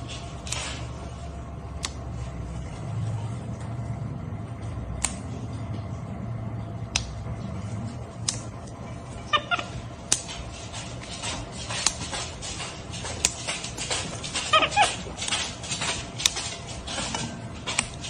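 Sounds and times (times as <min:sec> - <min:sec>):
steady low hum: 0:00.0 - 0:18.0
sharp clicks: 0:05.0 - 0:05.2.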